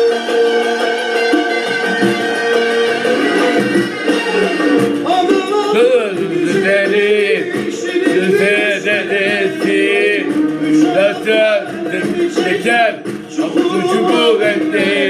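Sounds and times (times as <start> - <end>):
folk instrumental accompaniment: 0.0 - 15.0
man singing wavering phrases: 5.1 - 15.0.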